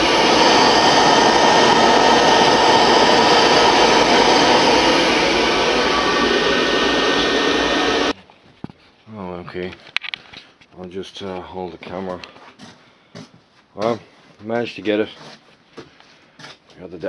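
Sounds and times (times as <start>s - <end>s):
boiler rushing noise: 0.0s - 8.1s.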